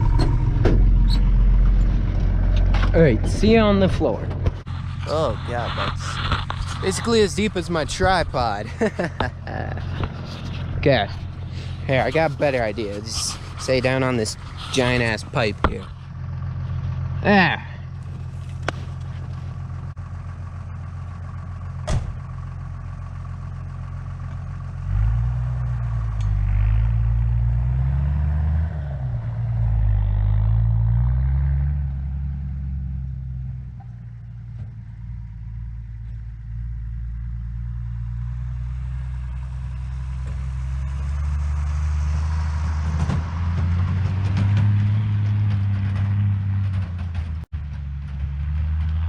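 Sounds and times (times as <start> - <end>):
pickup truck engine revving: 0.0 - 19.1, 24.8 - 33.6, 37.8 - 49.0.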